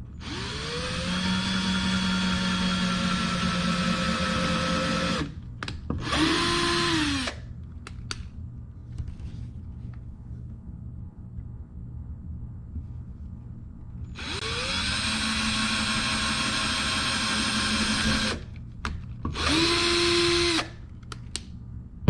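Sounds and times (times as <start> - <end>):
power drill drilling wood: 0.2 - 5.3, 6.0 - 7.4, 14.2 - 18.4, 19.4 - 20.7.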